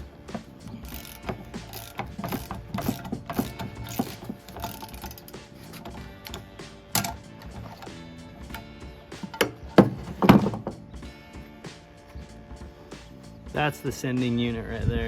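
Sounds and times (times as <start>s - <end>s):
ratchet wrench clicking: 0.0s - 9.6s.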